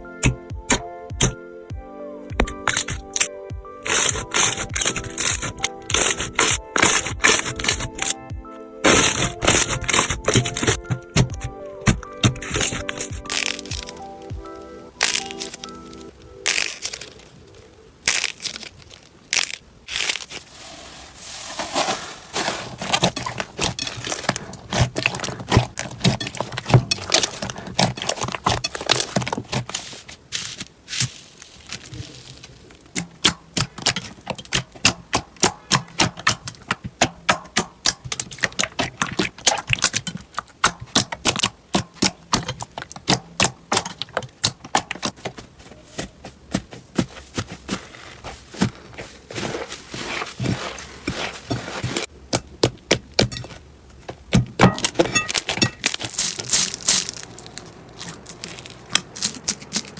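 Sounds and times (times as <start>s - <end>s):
slime crackling pops: 15.0s - 17.2s.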